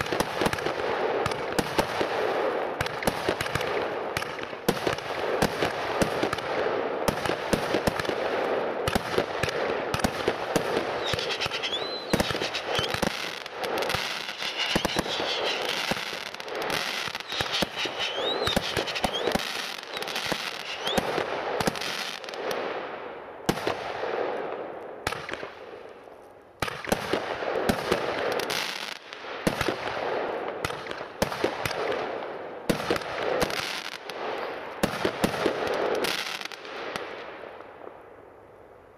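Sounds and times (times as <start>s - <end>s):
firework crackling and banging: 8.8s - 22.5s
firework whistling glides: 10.8s - 21.2s.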